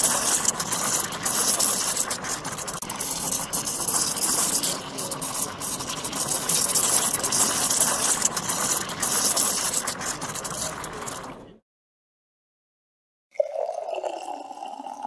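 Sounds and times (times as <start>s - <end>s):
clicks and rattles: 0.0s - 11.4s
espresso machine hissing: 0.0s - 11.5s.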